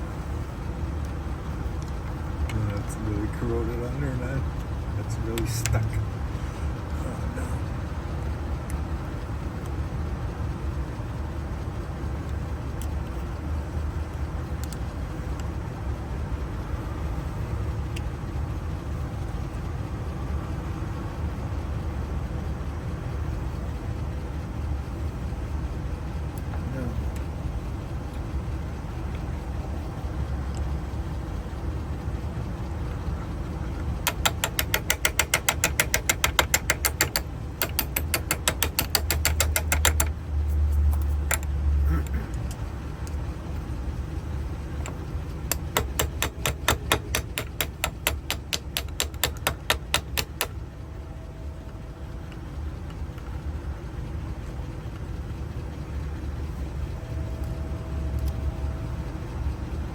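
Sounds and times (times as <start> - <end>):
steady low hum: 0.0 - 59.9
light tapping on metal: 34.0 - 43.2, 44.8 - 50.6.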